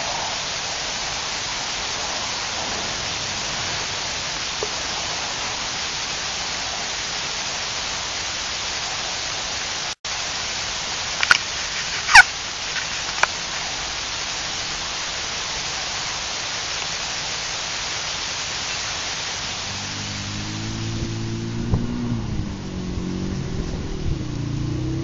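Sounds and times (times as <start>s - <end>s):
steady rushing noise: 0.0s - 15.0s, 17.0s - 25.0s.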